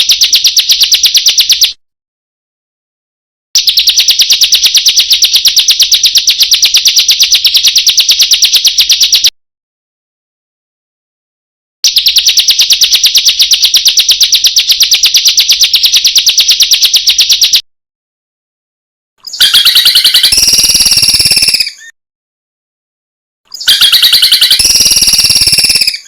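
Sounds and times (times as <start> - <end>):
harsh buzzy bird call: 19.2 - 22.0, 23.5 - 26.0
rapid high bird trill: 19.2 - 22.0, 23.5 - 26.0.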